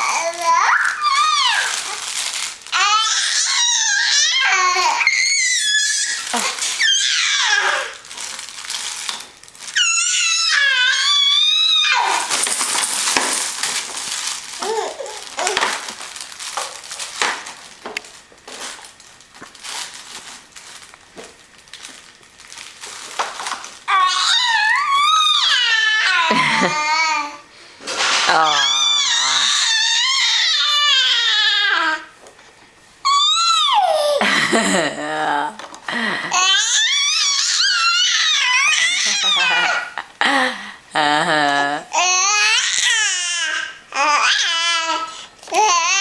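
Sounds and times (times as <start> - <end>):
baby squealing and babbling: 0.0 - 8.0, 9.7 - 13.2, 14.6 - 15.8, 23.9 - 27.4, 28.3 - 32.0, 33.0 - 34.2, 36.4 - 39.9
rustling: 5.0 - 10.1, 11.5 - 23.9.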